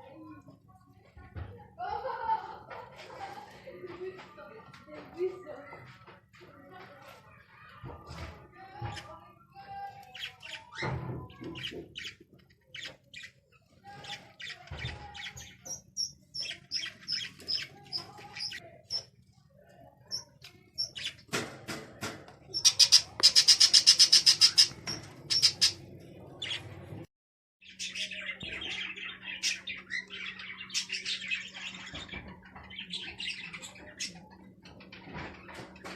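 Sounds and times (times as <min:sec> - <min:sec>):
small birds chirping: 0:08.9 - 0:21.4, 0:22.5 - 0:26.8, 0:27.6 - 0:35.9.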